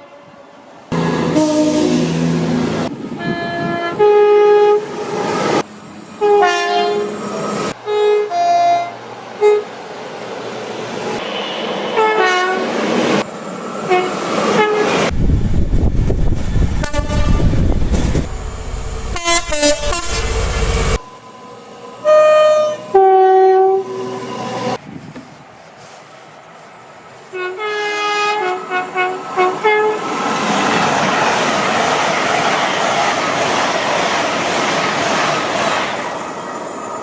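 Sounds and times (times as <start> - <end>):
train horn blasts: 0.0 - 2.6, 3.2 - 5.0, 6.2 - 7.2, 7.8 - 9.7, 11.9 - 12.7, 13.9 - 15.1, 16.8 - 17.6, 19.1 - 20.3, 22.0 - 24.2, 27.3 - 30.0
low rumble of passing train: 0.0 - 37.0.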